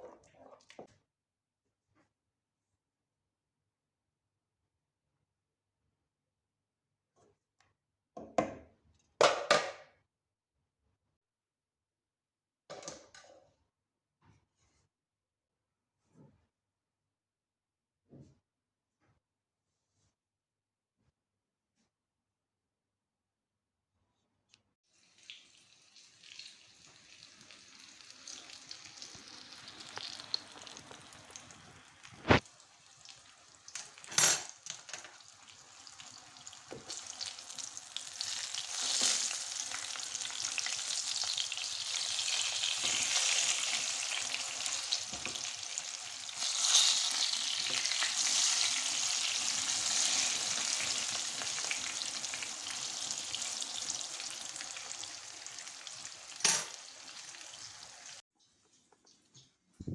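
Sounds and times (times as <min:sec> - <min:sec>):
food sizzling in a pan: 0:24.9 - 0:58.2.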